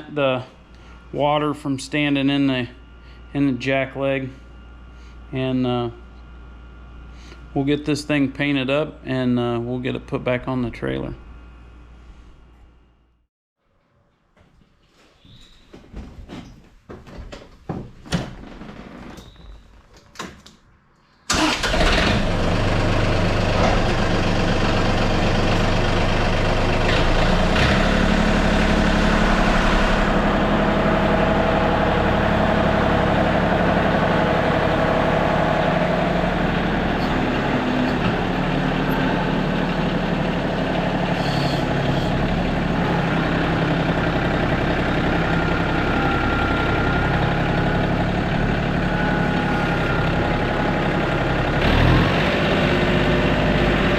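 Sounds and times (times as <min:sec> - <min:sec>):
engine running: 0:21.3 - 0:53.9.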